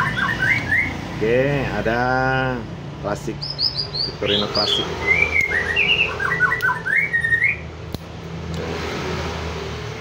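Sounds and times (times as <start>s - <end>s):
bird chirping: 0.0s - 2.5s, 3.1s - 7.8s
vehicle passing by: 0.0s - 10.0s.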